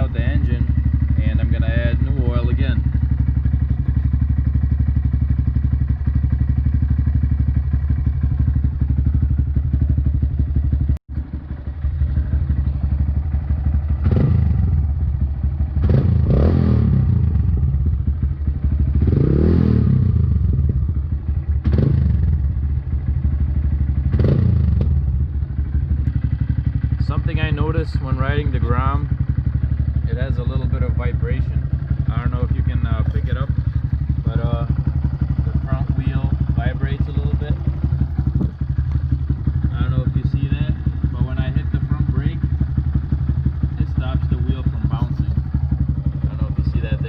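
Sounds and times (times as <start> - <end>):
motorcycle engine idling and revving: 0.0 - 47.0.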